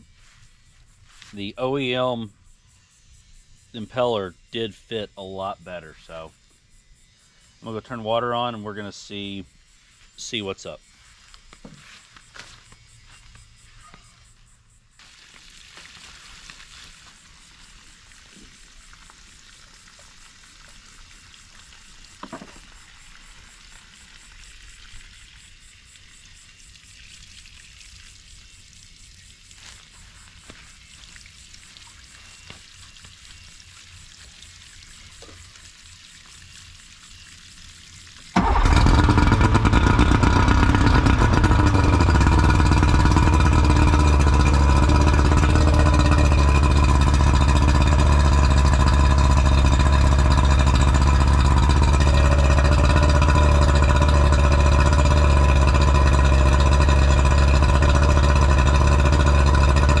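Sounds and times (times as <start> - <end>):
water hissing from hose: 15.0 - 60.0
outboard motor idling: 29.3 - 60.0.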